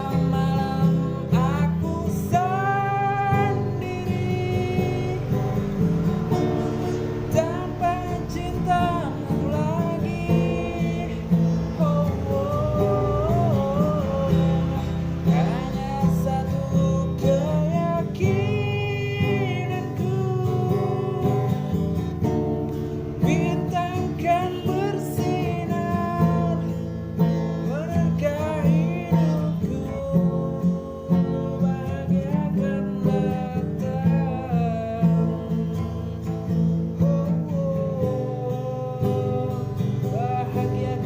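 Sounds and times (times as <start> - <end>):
wavering melody line: 0.0 - 29.7
acoustic guitar strumming: 0.0 - 41.0.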